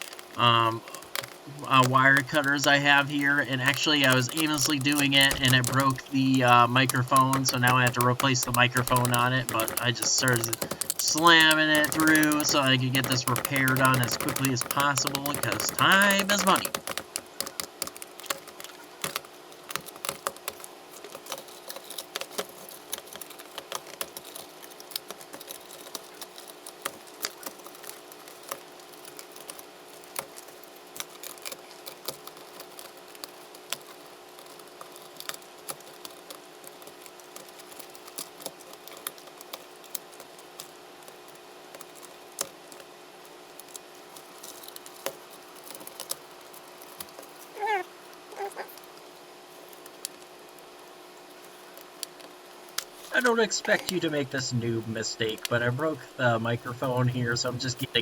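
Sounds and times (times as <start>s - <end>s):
plastic and metal clicks and snaps: 0.0s - 41.2s
faint steady hum: 0.0s - 58.0s.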